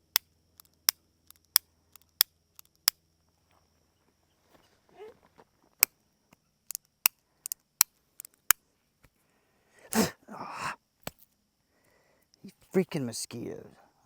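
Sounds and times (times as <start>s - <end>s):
pistol mechanism clicking: 0.1s - 3.0s, 6.7s - 8.6s.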